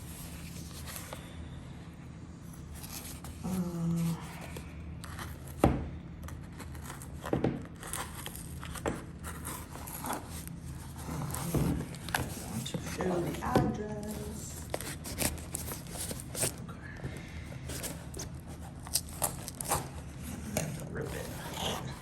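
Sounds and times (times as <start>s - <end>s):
mailer crinkling and rustling: 17.6s - 22.0s.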